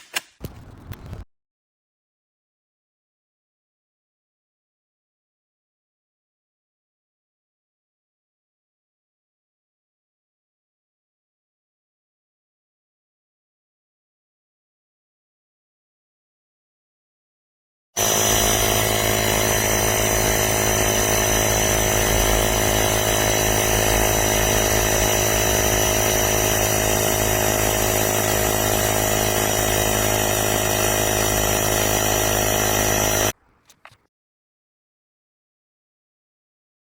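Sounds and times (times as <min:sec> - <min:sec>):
air compressor motor buzzing: 0:18.0 - 0:34.0.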